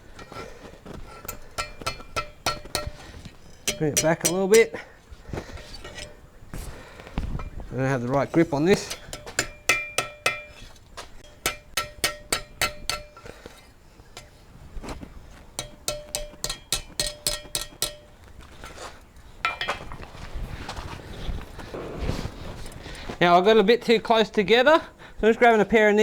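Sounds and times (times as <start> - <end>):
light hammer blows on steel: 1.1 - 4.8, 15.6 - 18.3.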